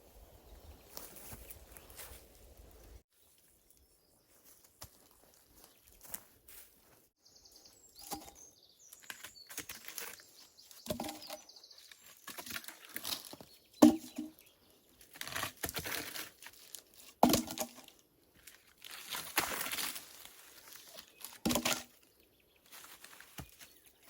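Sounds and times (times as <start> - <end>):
dry vegetation rustling: 0.0 - 24.0
bird chirps: 7.2 - 12.3.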